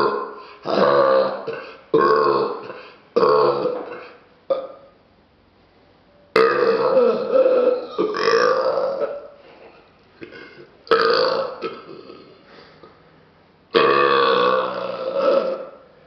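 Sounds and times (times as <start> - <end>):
man belching loudly: 0.0 - 4.9, 6.4 - 9.3, 10.2 - 12.4, 13.7 - 15.8.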